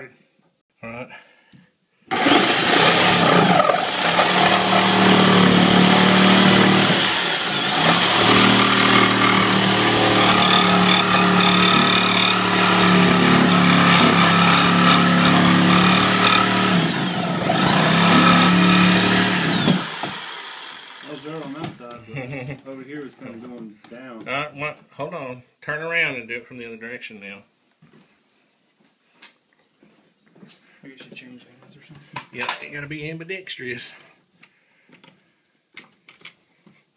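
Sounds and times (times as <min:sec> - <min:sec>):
reciprocating saw cutting drywall: 0:02.1 - 0:21.7.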